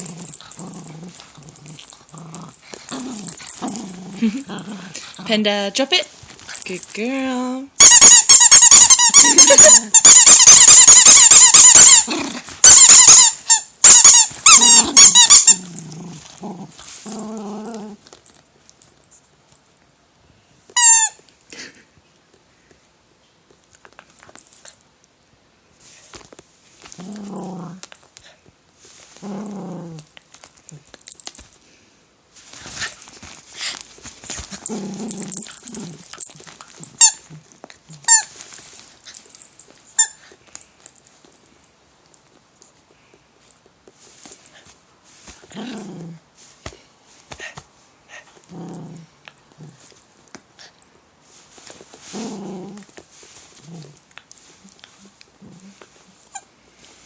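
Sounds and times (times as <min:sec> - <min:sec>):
dog growling: 0:00.0 - 0:05.3, 0:12.0 - 0:12.5, 0:14.7 - 0:18.0, 0:27.0 - 0:27.9, 0:29.2 - 0:30.1, 0:34.5 - 0:38.1, 0:45.5 - 0:46.2, 0:48.2 - 0:49.9, 0:52.0 - 0:52.9, 0:54.6 - 0:56.2
squeaky toy squeaking: 0:07.8 - 0:15.6, 0:20.8 - 0:21.2, 0:35.4 - 0:37.3, 0:38.0 - 0:38.4, 0:40.0 - 0:40.2.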